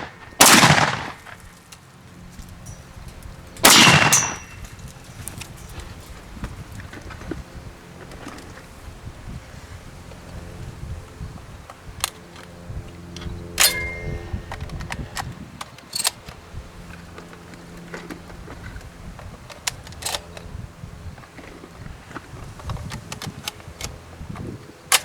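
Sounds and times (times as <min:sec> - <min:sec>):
shotgun shots: 0:00.0 - 0:01.4, 0:03.6 - 0:04.6
steady low drone: 0:09.6 - 0:17.2.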